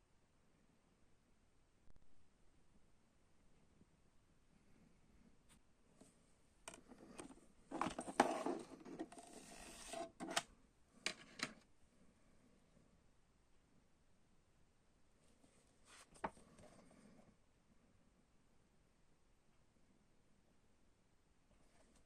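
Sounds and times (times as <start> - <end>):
plastic and paper rustling: 6.7 - 10.4.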